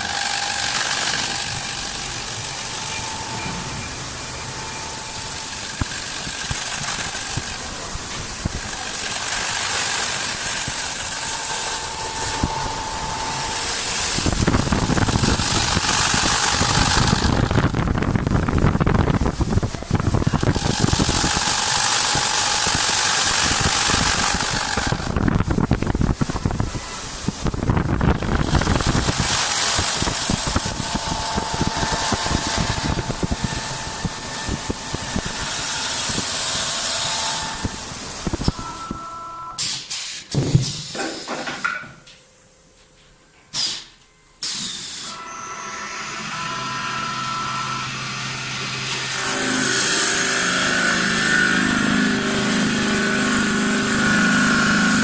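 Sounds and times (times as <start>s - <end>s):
lathe mechanical rattle: 0.0s - 38.9s
air hisses: 39.6s - 41.7s, 43.5s - 45.2s.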